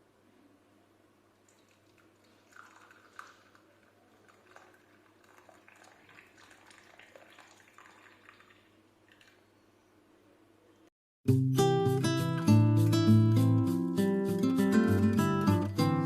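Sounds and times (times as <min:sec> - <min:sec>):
liquid pouring: 0:01.4 - 0:09.6.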